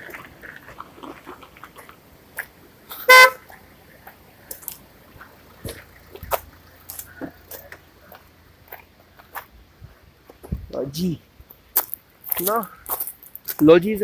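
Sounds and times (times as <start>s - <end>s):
footsteps on gravel: 0.0s - 9.6s, 11.7s - 13.7s
car horn beep: 2.9s - 3.5s.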